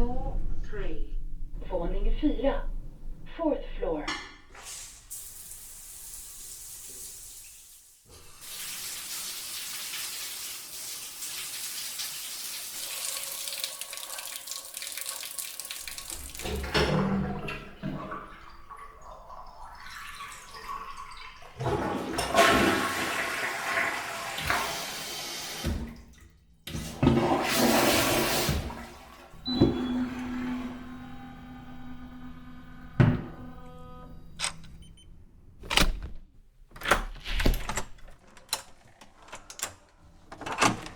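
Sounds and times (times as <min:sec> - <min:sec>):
toilet flushing: 0:04.5 - 0:31.4
water pipe humming: 0:08.1 - 0:24.8.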